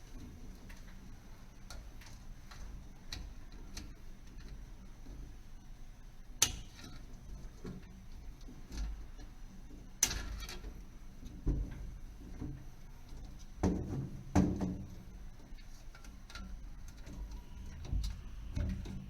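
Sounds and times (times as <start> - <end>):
sharp knocks on ceiling fixture: 13.6 - 14.9.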